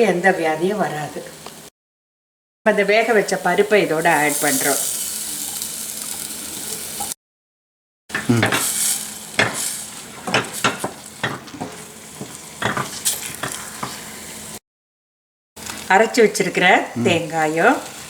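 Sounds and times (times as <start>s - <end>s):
food sizzling in a pan: 2.7s - 7.2s, 8.1s - 14.6s, 15.6s - 18.0s
spoon scraping a pan: 8.2s - 14.4s.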